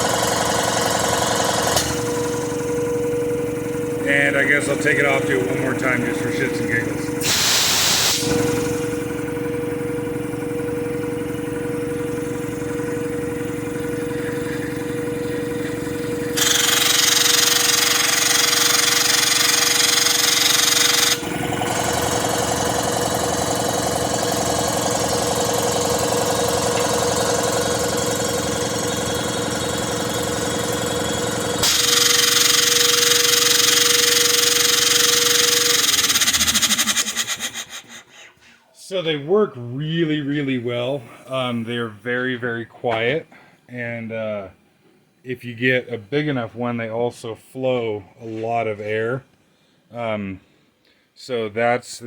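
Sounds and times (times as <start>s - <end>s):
air compressor pump running: 0.0s - 38.6s
compressed air rushing out: 7.2s - 8.7s.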